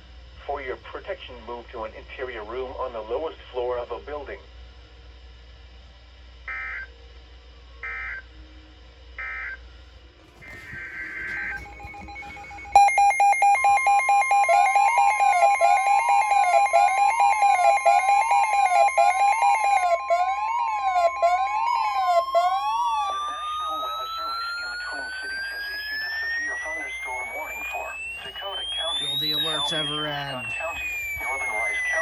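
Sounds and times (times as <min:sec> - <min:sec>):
steady high alarm tone: 0:10.4 - 0:32.0
warbling electronic alarm tone: 0:10.4 - 0:32.0
screeching digital data bursts: 0:10.5 - 0:32.0.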